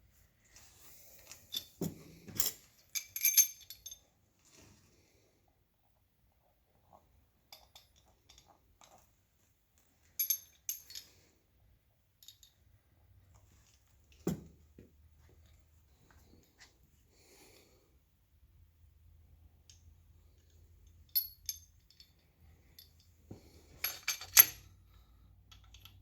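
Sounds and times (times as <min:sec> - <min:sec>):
metal parts clinking: 0:01.2 - 0:04.0, 0:10.2 - 0:11.2, 0:20.4 - 0:24.8.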